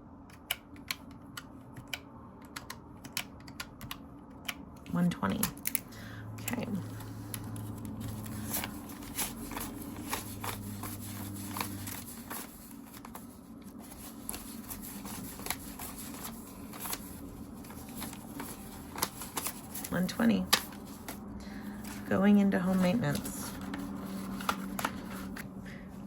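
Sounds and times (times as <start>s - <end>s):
low steady hum: 0.0s - 26.0s
paper banknotes rustling: 6.8s - 25.6s.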